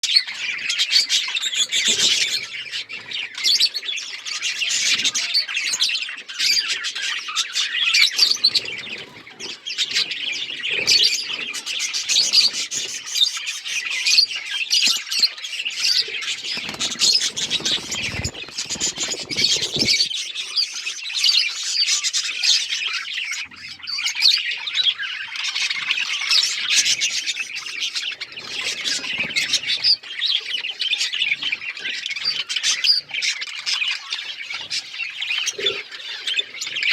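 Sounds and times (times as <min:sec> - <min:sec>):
parrots chattering and chirping: 0:00.1 - 0:36.9.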